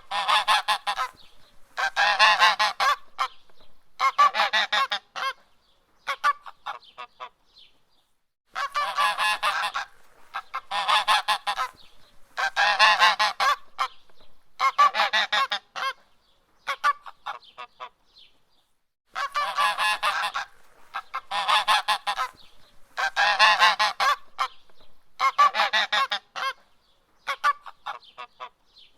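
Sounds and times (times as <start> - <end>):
goose honking: 0.0 - 1.2, 1.8 - 3.3, 8.6 - 11.8, 12.4 - 14.0, 19.2 - 22.4, 23.0 - 24.6, 25.2 - 26.6.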